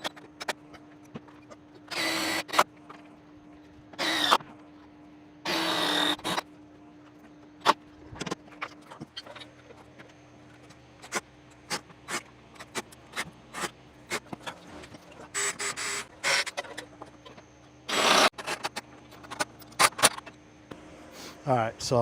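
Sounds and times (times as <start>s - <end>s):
cordless drill bursts: 1.9s - 2.6s, 4.0s - 4.4s, 5.5s - 6.4s.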